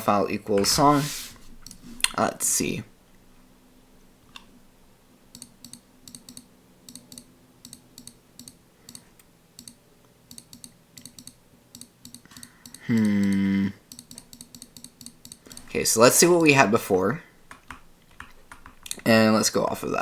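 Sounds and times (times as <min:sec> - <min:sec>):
mouse buttons clicking: 0:05.3 - 0:15.8
person humming: 0:12.8 - 0:13.8
keyboard keys clicking: 0:17.5 - 0:19.0.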